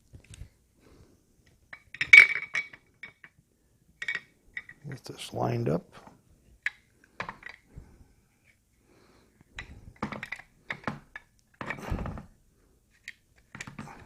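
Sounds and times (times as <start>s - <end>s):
metal parts clicking and knocking: 4.0s - 4.8s, 6.6s - 7.7s, 9.6s - 12.2s, 13.0s - 14.0s.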